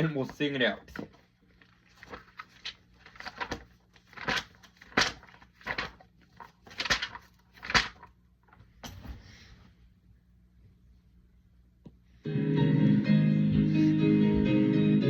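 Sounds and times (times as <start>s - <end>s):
pages turning: 0.0s - 8.6s.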